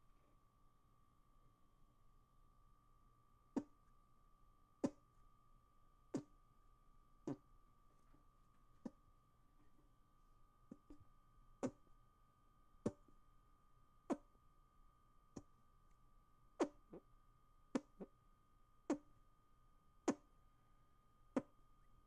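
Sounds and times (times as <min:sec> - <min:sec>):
faint steady hum: 0:00.0 - 0:22.0
hand fart noises: 0:16.6 - 0:17.0.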